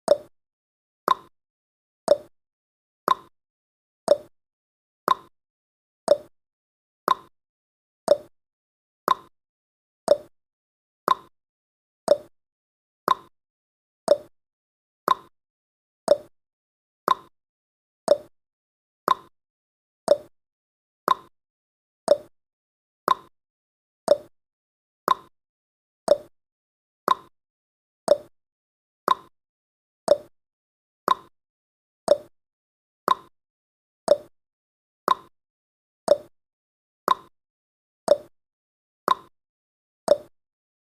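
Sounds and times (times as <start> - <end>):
timer ticking: 0.1 - 0.3, 1.1 - 1.3, 2.1 - 2.3, 3.1 - 3.3, 4.1 - 4.3, 5.1 - 5.3, 6.1 - 6.3, 7.1 - 7.3, 8.1 - 8.3, 9.1 - 9.3, 10.1 - 10.3, 11.1 - 11.3, 12.1 - 12.3, 13.1 - 13.3, 14.1 - 14.3, 15.1 - 15.3, 16.1 - 16.3, 17.1 - 17.3, 18.1 - 18.3, 19.1 - 19.3, 20.1 - 20.3, 21.1 - 21.3, 22.1 - 22.3, 23.1 - 23.3, 24.1 - 24.3, 25.1 - 25.3, 26.1 - 26.3, 28.1 - 28.3, 30.1 - 30.3, 31.1 - 31.3, 32.1 - 32.3, 34.1 - 34.3, 36.1 - 36.3, 38.1 - 38.3, 40.1 - 40.3.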